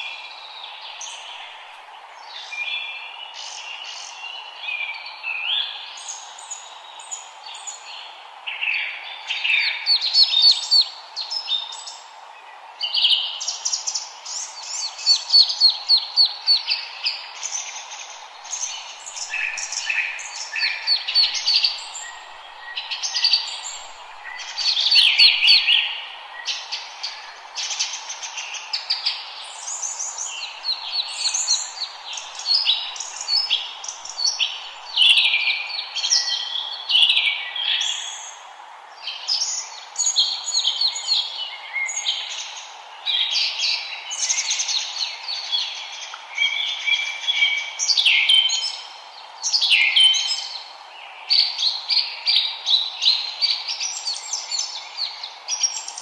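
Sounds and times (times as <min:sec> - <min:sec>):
low background hiss: 0:00.0 - 0:56.0
birds chirping and trilling: 0:13.9 - 0:38.4.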